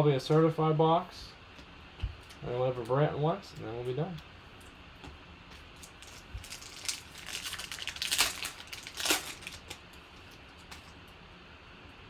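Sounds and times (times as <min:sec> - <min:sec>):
wrapper tearing and crinkling: 0:05.8 - 0:10.0.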